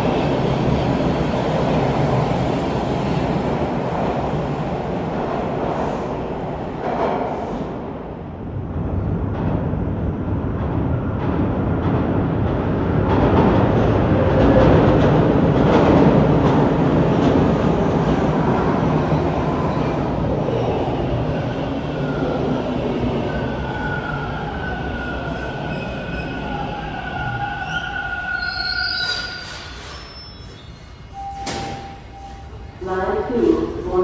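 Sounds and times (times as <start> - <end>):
train wheels rumbling on rail: 0.0 - 34.0
wheels squealing: 23.7 - 31.3.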